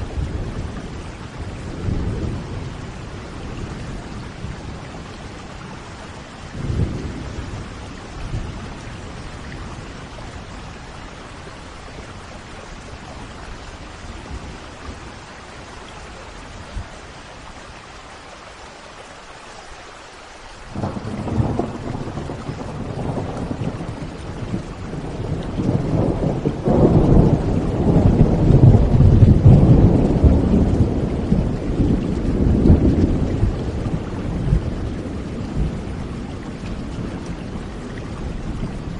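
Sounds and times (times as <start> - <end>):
steady rain: 0.0 - 38.9
rolling thunder rumble: 20.7 - 38.9.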